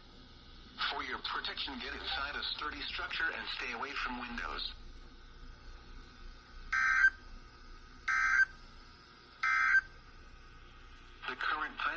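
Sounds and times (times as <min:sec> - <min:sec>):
faint radio hiss: 0:00.0 - 0:11.9
digital data tone bursts: 0:08.1 - 0:08.5, 0:09.4 - 0:09.9.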